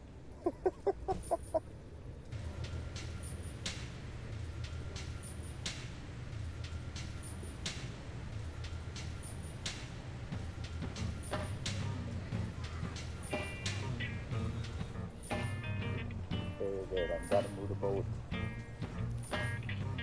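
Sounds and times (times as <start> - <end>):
chicken clucking: 0.3 - 1.7.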